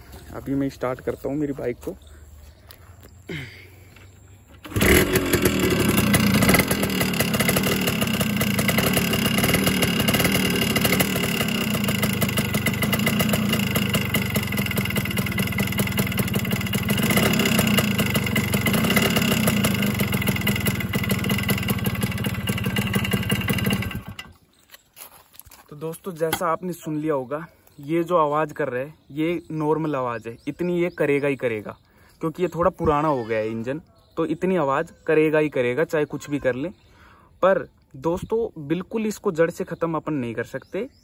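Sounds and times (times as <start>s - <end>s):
motorcycle engine starting and idling: 3.3s - 24.5s.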